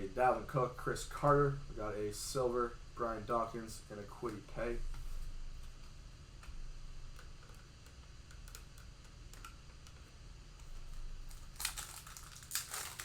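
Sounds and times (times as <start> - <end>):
card packs rustling: 10.7 - 13.0.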